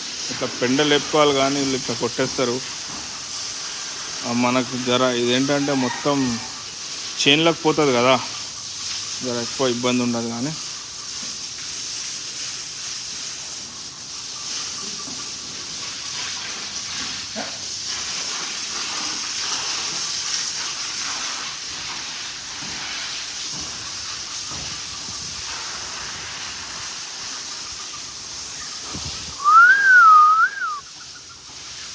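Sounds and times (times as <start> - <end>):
water jet spraying from hose: 0.0 - 31.9
loud whistled note: 29.4 - 31.0.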